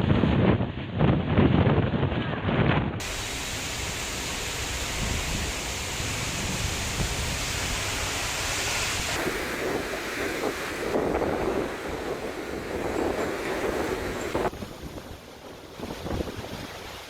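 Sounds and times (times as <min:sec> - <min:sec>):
wind gusting on microphone: 0:00.0 - 0:17.0
heavy rain: 0:03.0 - 0:14.8.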